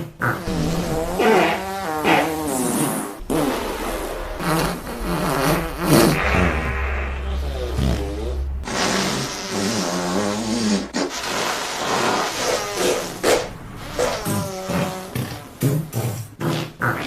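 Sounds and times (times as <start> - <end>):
fart sound effects: 0.4 - 17.0.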